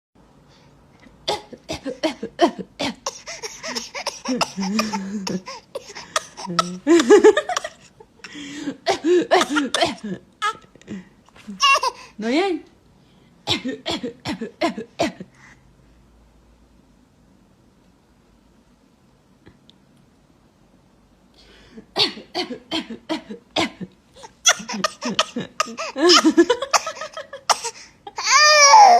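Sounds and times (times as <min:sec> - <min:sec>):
baby coughing: 0:01.3 - 0:07.9, 0:08.8 - 0:10.6, 0:11.6 - 0:12.0, 0:22.0 - 0:28.9.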